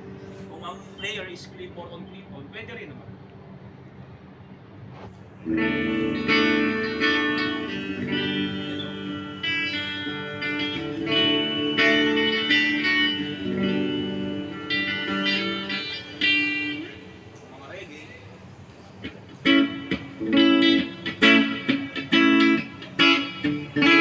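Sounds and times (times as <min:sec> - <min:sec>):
electric guitar chords and strums: 0:05.4 - 0:17.5, 0:18.5 - 0:24.0.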